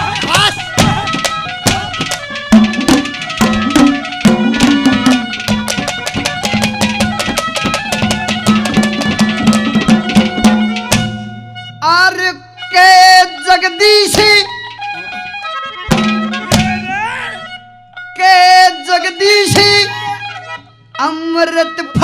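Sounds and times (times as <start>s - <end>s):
hand drum rhythm: 0.0s - 11.3s, 15.9s - 17.1s
sustained melody notes: 0.0s - 22.0s.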